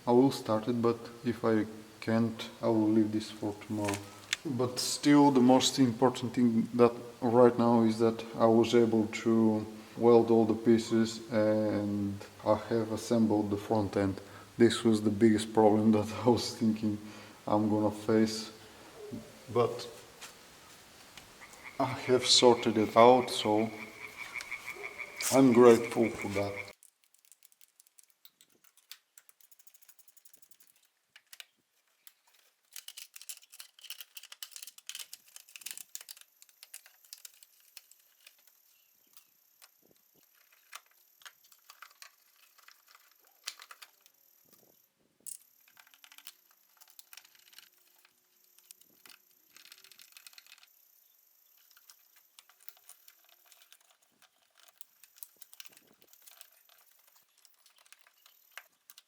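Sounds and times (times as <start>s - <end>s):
hand tools clicking and rattling: 21.2s - 44.7s, 45.3s - 50.8s, 51.5s - 59.0s.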